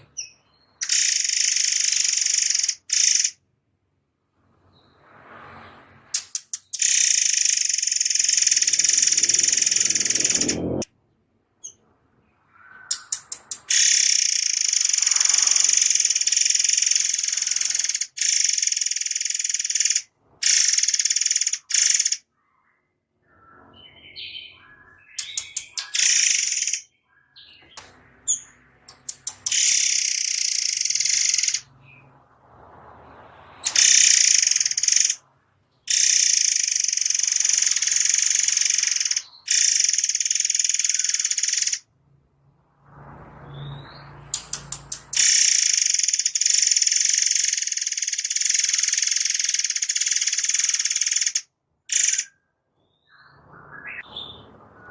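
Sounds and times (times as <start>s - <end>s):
bird singing rapid high trills: 0.0s - 3.4s, 6.2s - 10.9s, 11.6s - 32.1s, 33.0s - 35.2s, 35.8s - 41.9s, 43.4s - 54.9s
soft bird chirps: 4.6s - 32.2s, 43.4s - 54.9s.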